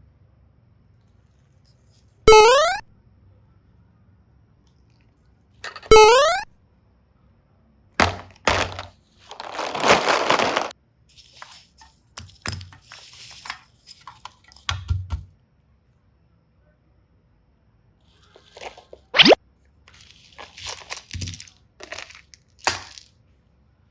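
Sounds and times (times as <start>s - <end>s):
plastic crackling: 8.0s - 10.7s, 19.9s - 23.1s.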